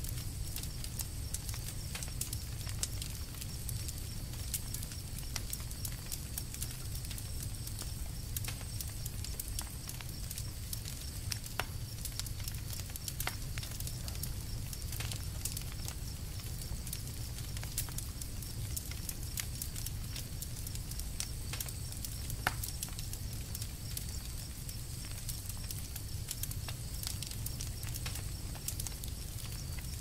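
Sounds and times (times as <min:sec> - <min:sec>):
campfire crackling and popping: 0:00.0 - 0:30.0.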